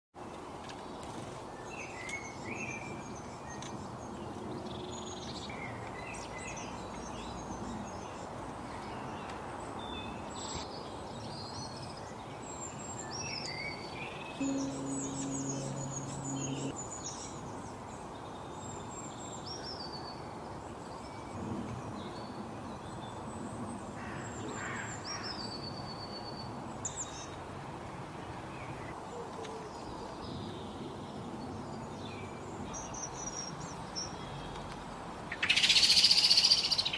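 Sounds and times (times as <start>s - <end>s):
small birds chirping: 0.7s - 20.2s.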